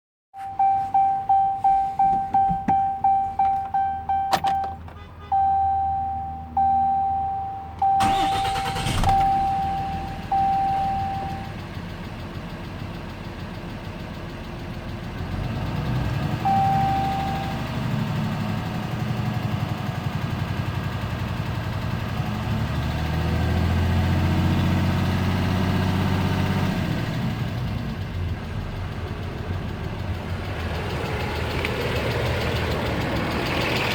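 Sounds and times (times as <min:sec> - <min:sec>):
dashboard warning chime beeping: 0:00.4 - 0:11.6, 0:16.4 - 0:17.8
diesel engine cranking and idling: 0:00.4 - 0:33.9
engine revving: 0:08.0 - 0:11.5, 0:15.2 - 0:18.6, 0:22.2 - 0:27.5, 0:29.7 - 0:33.9.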